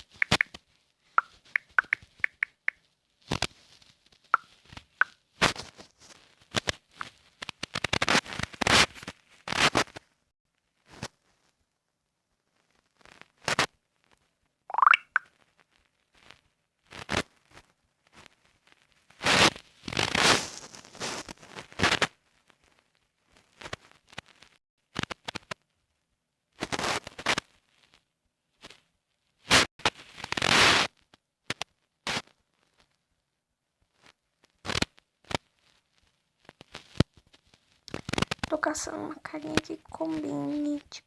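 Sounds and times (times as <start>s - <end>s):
short clicks: 0.0s - 0.5s, 1.2s - 2.8s, 14.7s - 15.2s.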